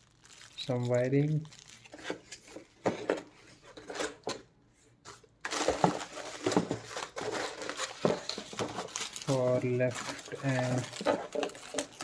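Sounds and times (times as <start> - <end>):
packaging rustling: 0.0 - 4.5, 5.1 - 12.0.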